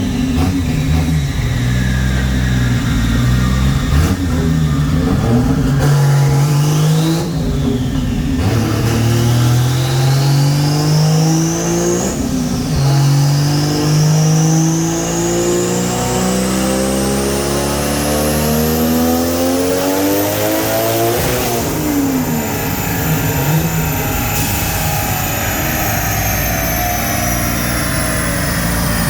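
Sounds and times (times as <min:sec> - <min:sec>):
engine revving at full throttle: 0:00.0 - 0:29.0
high whine: 0:20.5 - 0:29.0.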